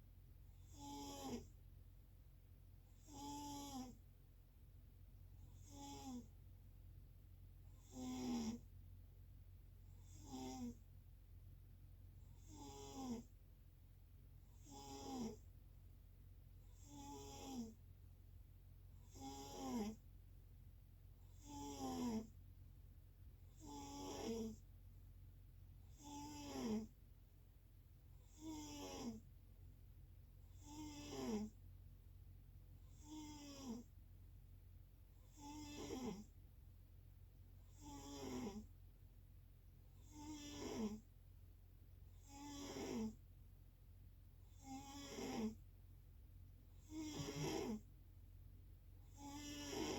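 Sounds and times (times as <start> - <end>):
faint low hum: 0.0 - 49.4
snoring: 0.6 - 1.5, 2.9 - 4.0, 5.4 - 6.4, 7.7 - 8.7, 9.9 - 10.8, 12.3 - 13.3, 14.5 - 15.5, 16.7 - 17.8, 19.0 - 20.0, 21.2 - 22.3, 23.5 - 24.7, 25.9 - 27.0, 28.2 - 29.3, 30.4 - 31.6, 32.8 - 33.9, 35.2 - 36.4, 37.6 - 38.7, 40.0 - 41.1, 42.1 - 43.2, 44.5 - 45.6, 46.8 - 47.9, 49.0 - 49.9
person snoring: 44.6 - 45.6, 46.9 - 47.8, 49.2 - 49.9.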